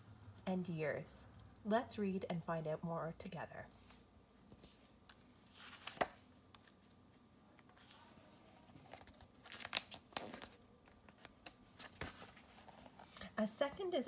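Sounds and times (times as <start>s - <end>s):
book pages turning: 4.5s - 7.0s, 7.6s - 13.2s.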